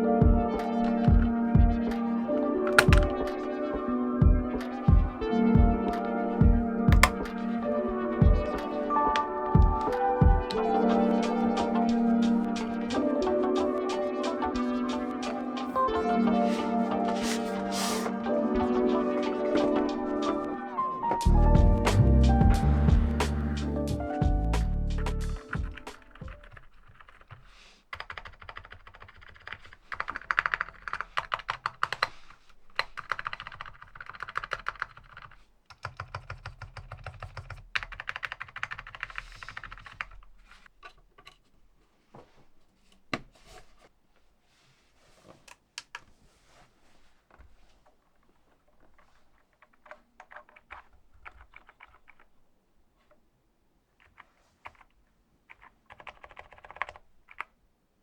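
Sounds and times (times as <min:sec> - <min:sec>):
mechanical keyboard typing: 0:02.6 - 0:03.4, 0:05.7 - 0:07.4, 0:25.1 - 0:40.7, 0:49.0 - 0:52.4, 0:54.0 - 0:57.6.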